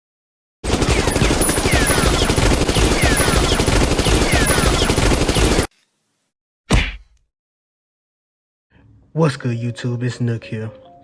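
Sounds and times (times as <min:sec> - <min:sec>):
rapid automatic gunfire: 0:00.6 - 0:05.7.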